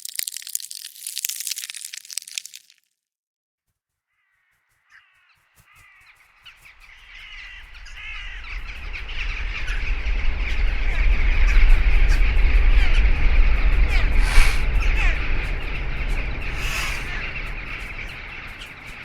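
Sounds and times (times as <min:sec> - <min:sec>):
low rumble: 0:08.0 - 0:19.0.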